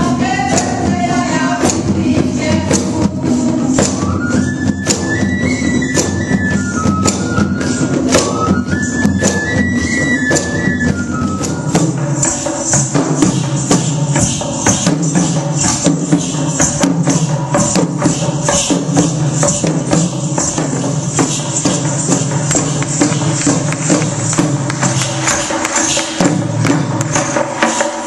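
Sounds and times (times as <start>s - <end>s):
jingling and struck percussion: 0.0s - 28.0s
high wind instrument melody: 3.1s - 15.4s.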